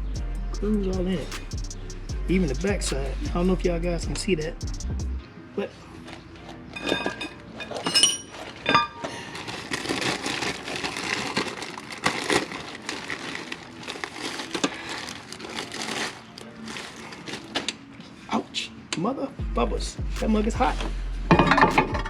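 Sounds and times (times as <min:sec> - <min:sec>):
scraping rustling noise: 0:06.0 - 0:17.8.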